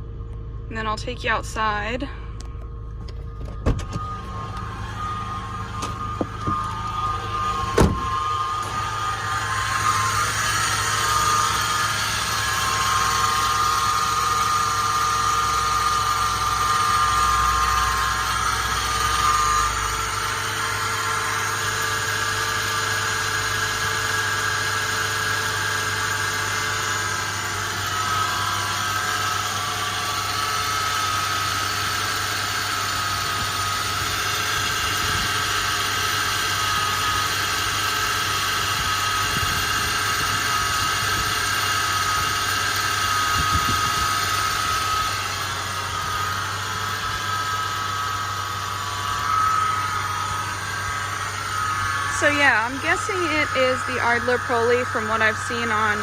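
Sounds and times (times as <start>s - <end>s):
car engine idling: 0.0s - 56.0s
high-pitched whirring: 3.1s - 56.0s.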